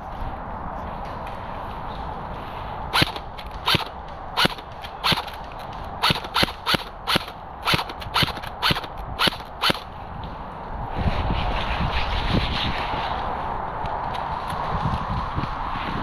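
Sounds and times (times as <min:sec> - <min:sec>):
airsoft gun shots: 0:03.0 - 0:09.9.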